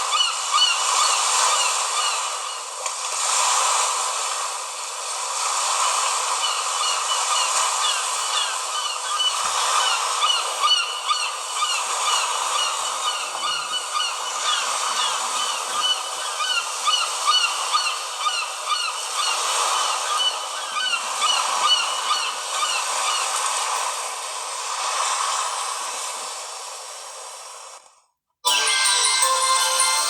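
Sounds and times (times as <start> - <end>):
bird call ringtone chirps: 28.4 - 30.0.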